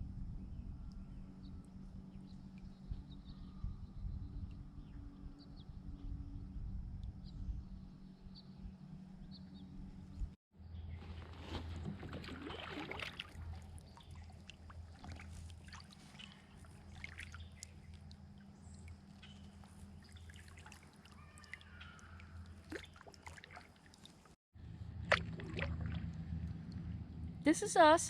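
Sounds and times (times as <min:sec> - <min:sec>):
steady low hum: 0:00.0 - 0:21.2, 0:21.9 - 0:28.0
water splashing around kayak: 0:11.0 - 0:27.3.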